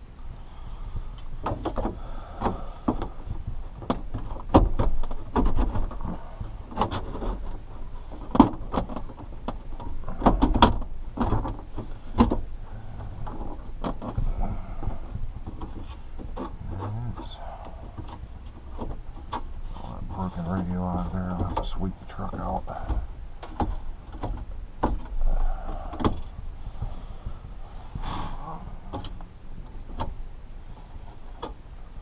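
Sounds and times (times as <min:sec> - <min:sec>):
low steady hum: 0:00.0 - 0:32.0.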